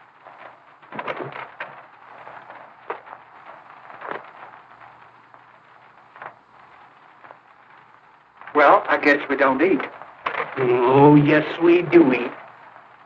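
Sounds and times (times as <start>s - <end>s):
soundtrack hiss: 0.0s - 13.0s
sharp knocks and thumps: 0.9s - 1.8s.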